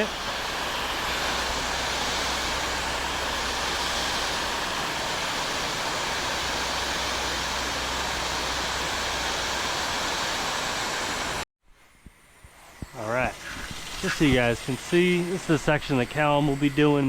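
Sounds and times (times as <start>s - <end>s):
engine humming low: 0.0s - 11.4s
pressure washer spraying water: 0.0s - 11.4s, 12.6s - 17.0s.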